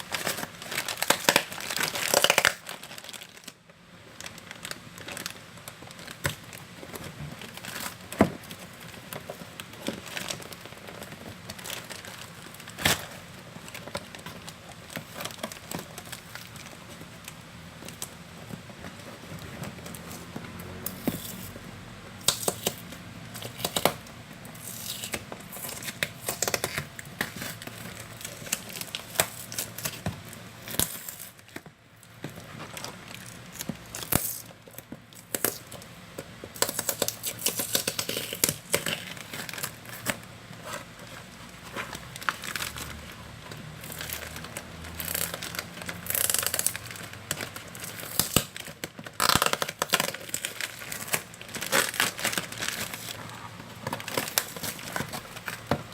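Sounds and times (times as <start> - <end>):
packaging crinkling and rustling: 0.0 - 21.6, 22.2 - 55.9.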